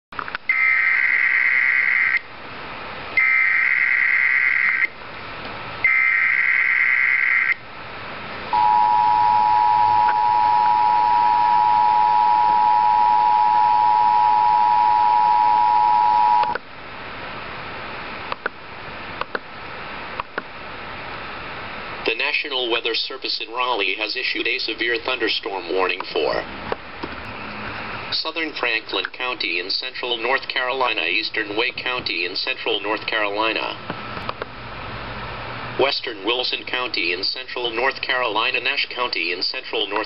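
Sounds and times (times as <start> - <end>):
digital data tone bursts: 8.6 - 16.6
two-tone attention signal: 8.6 - 16.6.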